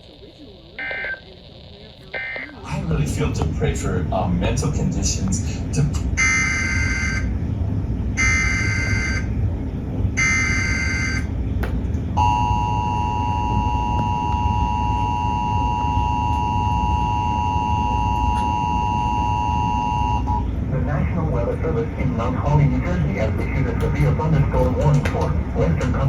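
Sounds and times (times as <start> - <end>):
radio noise: 0.0 - 7.3, 19.8 - 26.0
two-tone attention signal: 8.2 - 9.3, 12.2 - 20.4.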